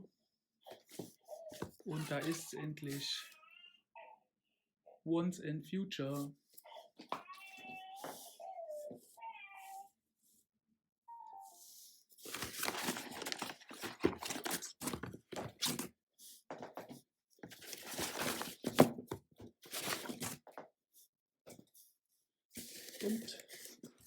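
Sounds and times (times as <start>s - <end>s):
packaging torn and crinkled: 12.3s - 15.8s.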